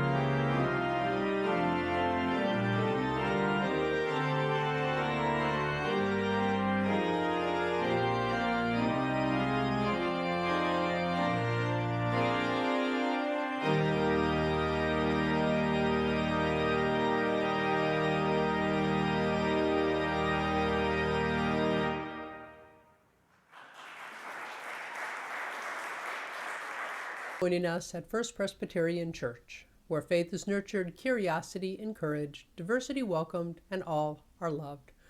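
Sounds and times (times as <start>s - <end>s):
church organ playing chords: 0.0s - 23.0s.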